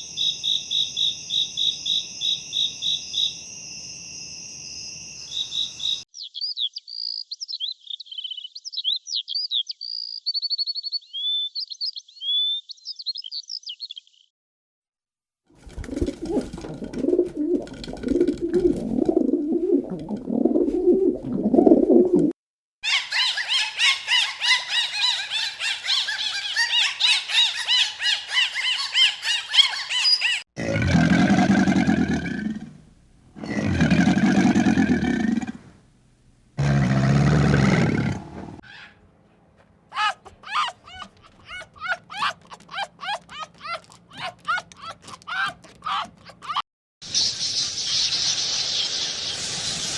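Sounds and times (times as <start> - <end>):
insects chirring: 0.0 - 6.0
songbird singing: 0.0 - 14.3, 22.9 - 30.4, 40.0 - 49.3
baby chicks peeping: 40.0 - 46.6.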